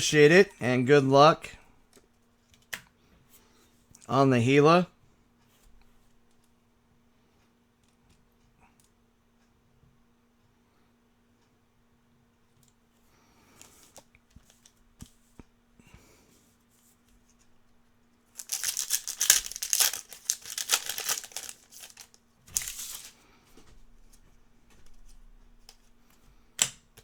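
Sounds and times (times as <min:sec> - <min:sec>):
faint electrical hum: 0:00.0 - 0:27.0
packaging tearing and crinkling: 0:18.4 - 0:23.1.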